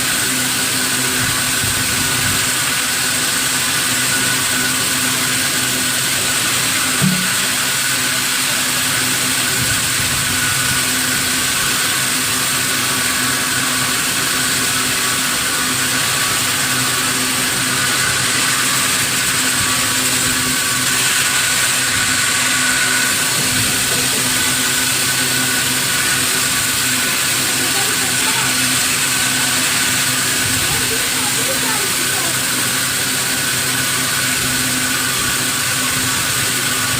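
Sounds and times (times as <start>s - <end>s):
high steady whine: 0.0s - 36.9s
sawmill machinery running: 0.0s - 36.9s
short low knock: 7.0s - 7.4s.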